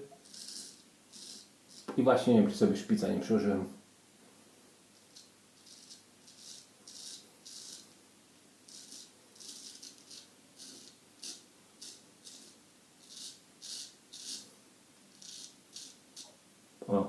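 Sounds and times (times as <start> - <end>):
straight razor scraping stubble: 0.2 - 2.0, 5.1 - 7.9, 8.7 - 14.5, 15.1 - 16.3.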